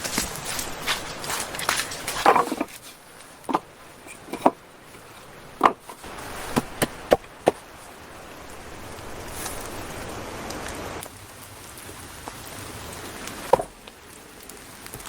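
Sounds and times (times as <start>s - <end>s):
sharp wooden knocks: 2.2s - 2.8s, 3.5s - 4.6s, 5.6s - 7.7s, 13.5s - 13.8s.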